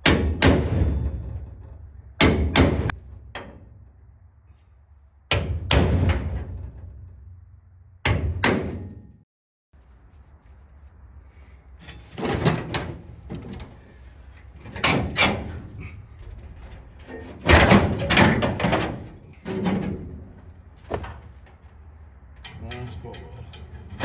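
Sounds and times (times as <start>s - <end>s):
knocks and clattering rattles: 0.0s - 4.0s, 5.3s - 7.4s, 11.8s - 21.7s.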